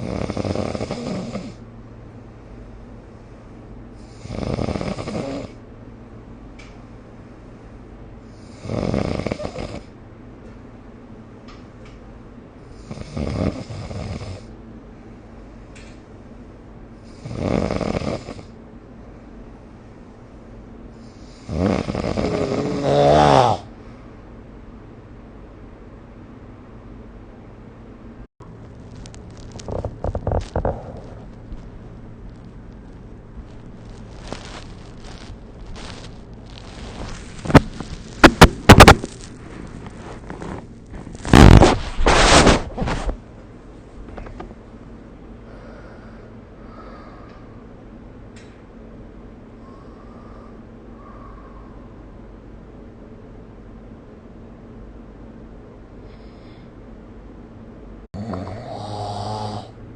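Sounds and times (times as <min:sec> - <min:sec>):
noisy sleeping breaths: 0:00.0 - 0:01.6, 0:02.3 - 0:05.6, 0:07.2 - 0:10.0, 0:12.6 - 0:14.6, 0:17.0 - 0:19.8, 0:20.9 - 0:24.2, 0:33.9 - 0:38.4, 0:45.4 - 0:47.8, 0:49.5 - 0:52.3, 0:56.0 - 0:56.9, 0:58.1 - 0:59.8
person snoring: 0:00.0 - 0:01.6, 0:04.0 - 0:05.6, 0:08.4 - 0:09.9, 0:17.1 - 0:18.5, 0:21.2 - 0:23.7, 0:58.2 - 0:59.8
steady low hum: 0:00.0 - 0:59.9
loud sharp cracks: 0:37.4 - 0:39.3.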